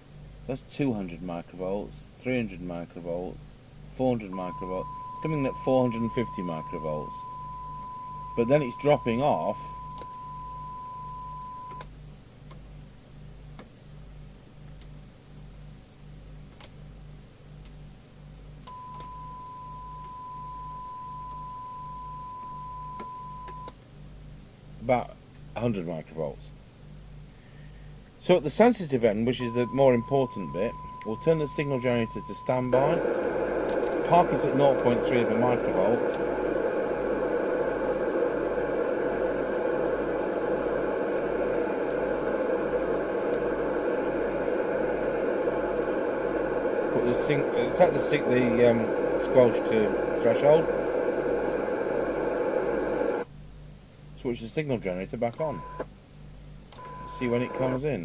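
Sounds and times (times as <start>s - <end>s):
low pulsing hum: 3.4s - 11.8s
radio static hiss: 4.0s - 10.0s, 28.2s - 53.3s, 57.1s - 58.0s
steady pure test tone: 4.0s - 11.8s, 18.7s - 23.7s, 28.2s - 53.3s, 56.8s - 58.0s
clicks: 32.7s - 34.1s.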